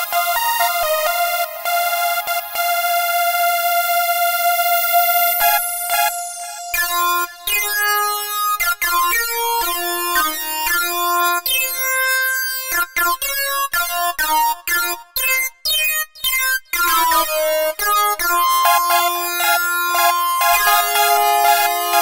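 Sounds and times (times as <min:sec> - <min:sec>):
electronic synthesizer music: 0:19.9 - 0:22.0.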